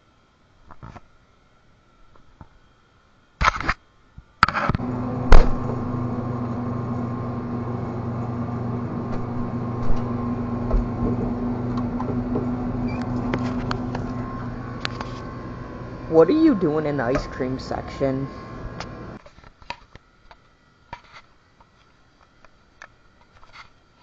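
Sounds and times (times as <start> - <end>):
low machine hum: 4.8 - 19.2.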